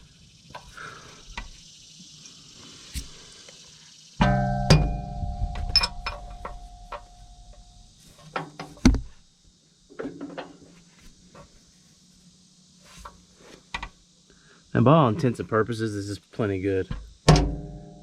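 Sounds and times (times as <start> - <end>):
heavy metal thunk: 17.3 - 17.9.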